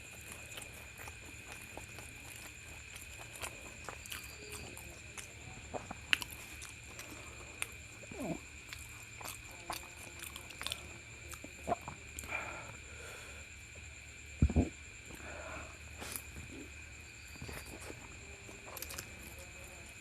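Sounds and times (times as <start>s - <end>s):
chewing mouth sounds: 0.0s - 12.3s, 17.4s - 19.7s.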